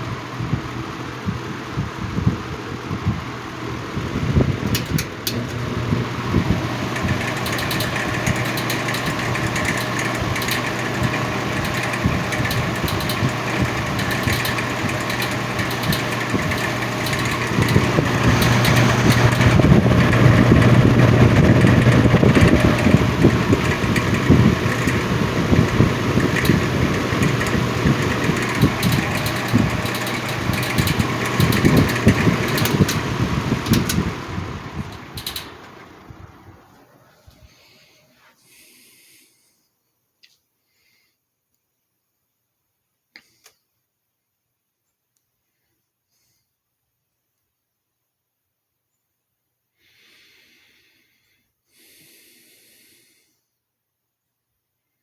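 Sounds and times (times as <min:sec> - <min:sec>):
box fan motor humming and rattling: 0:00.0 - 0:37.5.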